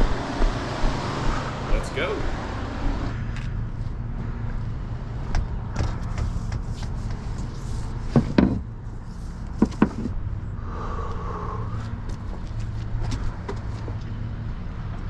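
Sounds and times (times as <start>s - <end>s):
steady low rumble: 10.3s - 12.6s.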